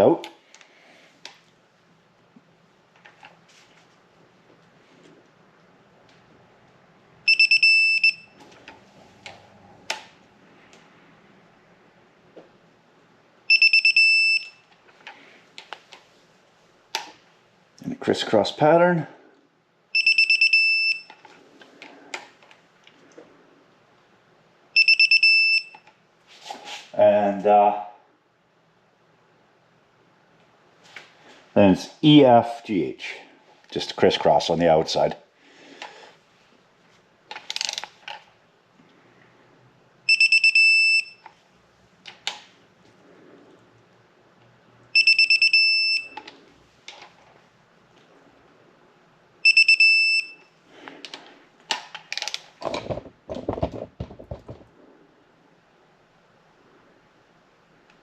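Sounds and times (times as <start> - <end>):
torque wrench beeping: 7.3 - 8.3, 45.0 - 46.2, 49.4 - 50.4.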